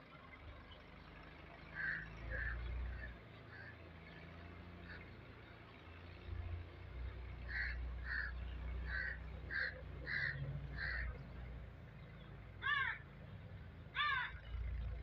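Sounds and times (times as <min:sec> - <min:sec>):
bird calling: 0:07.5 - 0:11.2.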